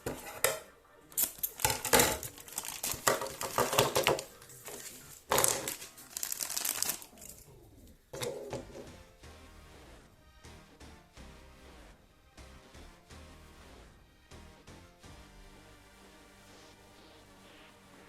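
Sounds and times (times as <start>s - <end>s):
plastic wrapping crinkling: 1.2s - 7.5s.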